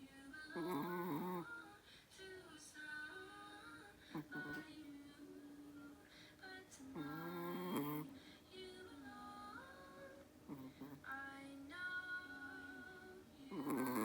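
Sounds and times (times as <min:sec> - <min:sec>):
high voice singing gently: 0:00.0 - 0:14.0.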